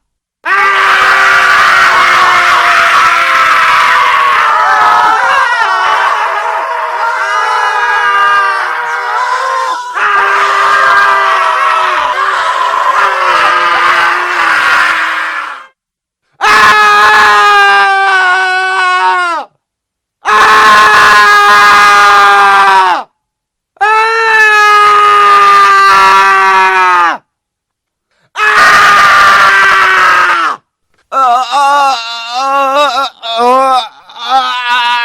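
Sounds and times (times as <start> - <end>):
man screaming in agony: 0.4 - 15.7, 16.4 - 19.5, 20.2 - 23.1, 23.8 - 27.2, 28.4 - 35.0
man sobbing cry: 31.1 - 35.0.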